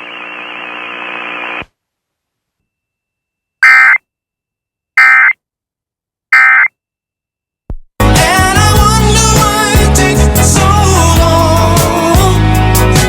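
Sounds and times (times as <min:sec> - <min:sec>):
radio data tone bursts: 0:03.6 - 0:04.0, 0:05.0 - 0:05.4, 0:06.4 - 0:06.7
radio hum: 0:05.0 - 0:05.4, 0:06.4 - 0:06.7.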